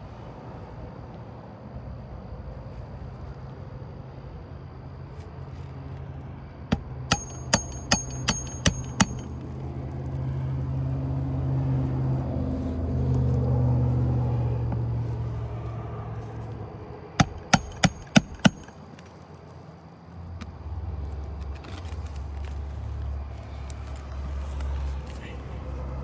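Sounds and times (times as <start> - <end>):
hammer striking nail: 6.7 - 9.6, 17.2 - 19.1
vehicle engine passing: 10.5 - 16.5.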